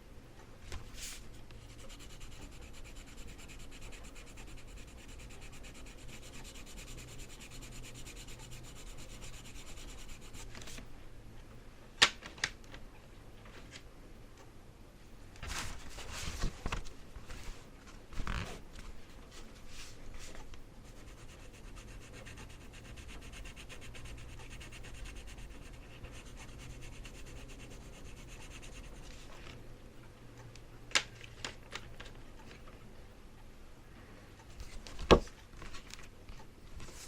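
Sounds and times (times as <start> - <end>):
pencil shading on paper: 1.6 - 10.5, 21.0 - 29.1.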